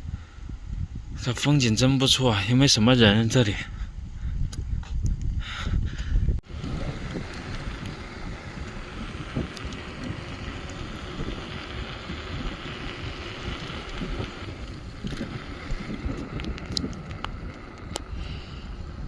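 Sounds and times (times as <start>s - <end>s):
wind buffeting microphone: 0.0s - 19.0s
low steady rumble: 3.9s - 19.0s.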